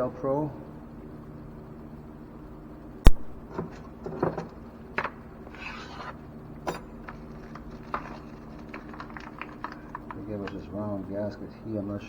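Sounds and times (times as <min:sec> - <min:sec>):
steady low hum: 0:00.0 - 0:03.6
packaging rustle: 0:07.2 - 0:10.2.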